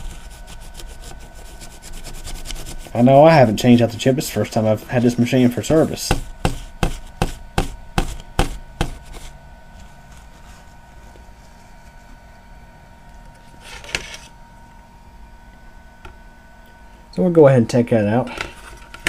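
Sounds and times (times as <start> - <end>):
sharp knocks of laptop parts: 6.1 - 9.1.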